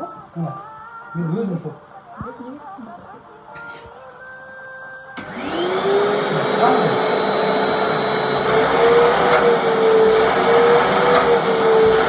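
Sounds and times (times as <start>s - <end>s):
vacuum cleaner running: 5.2s - 12.0s.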